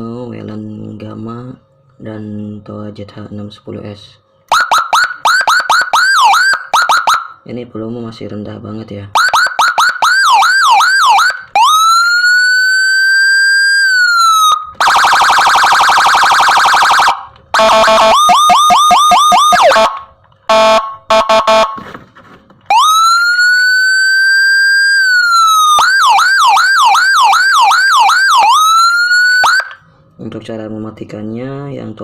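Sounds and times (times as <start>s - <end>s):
electronic siren: 4.5s - 7.4s, 9.2s - 21.8s, 22.7s - 29.8s.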